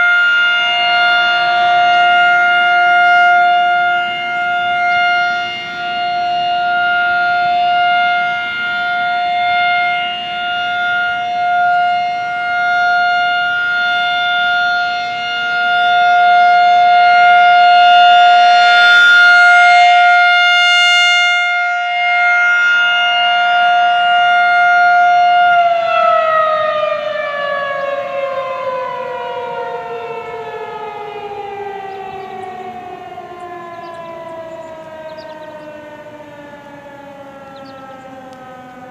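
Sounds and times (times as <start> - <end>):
distant rotating siren: 0.0 - 38.9.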